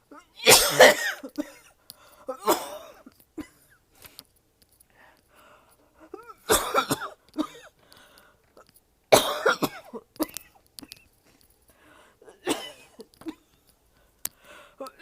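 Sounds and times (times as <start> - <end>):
person coughing hard: 0.0 - 3.7, 6.2 - 7.7, 9.1 - 10.6, 12.2 - 13.5.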